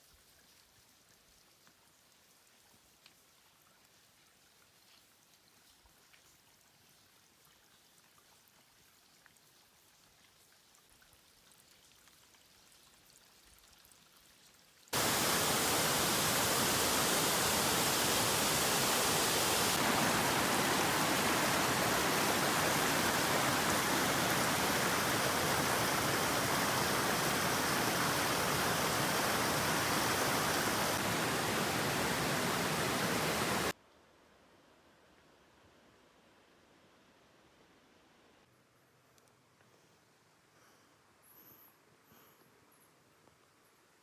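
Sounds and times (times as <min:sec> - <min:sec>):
rush of moving water: 0:15.0 - 0:33.8.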